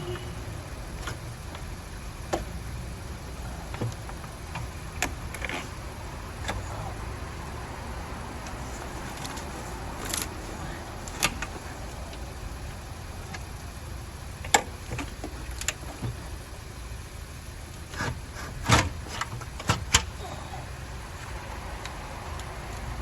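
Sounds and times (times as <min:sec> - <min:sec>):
steady low hum: 0:00.0 - 0:23.0
tools and metal parts clanking: 0:08.5 - 0:11.7.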